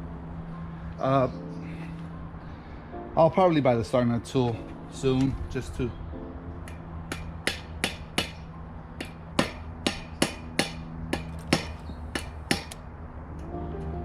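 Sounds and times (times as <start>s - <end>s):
hammer tapping metal: 6.6s - 12.8s.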